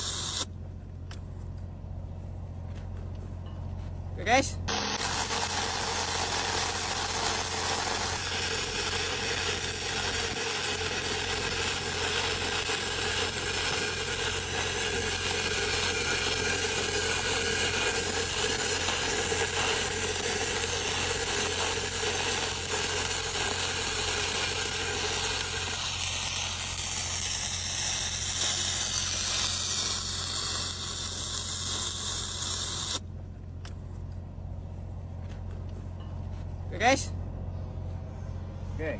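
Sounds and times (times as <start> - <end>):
welding arc crackling: 0.0 - 0.5, 4.7 - 33.0
low hum: 0.0 - 38.8.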